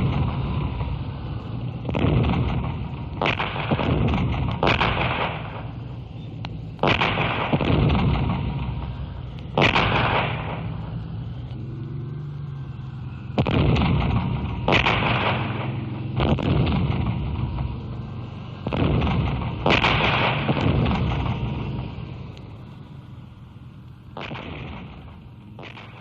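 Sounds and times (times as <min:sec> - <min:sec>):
cannon gunfire blasts: 0:00.0 - 0:26.0
continuous low rumble: 0:00.0 - 0:26.0.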